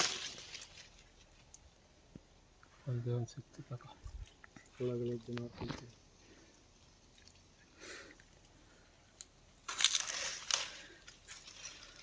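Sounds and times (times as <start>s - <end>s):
leaves and twigs crunching: 0.0s - 2.3s, 8.2s - 12.0s.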